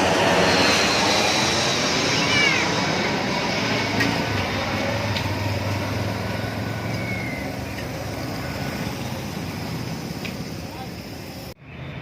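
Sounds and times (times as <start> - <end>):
airplane engine rush and hum: 0.0 - 12.0.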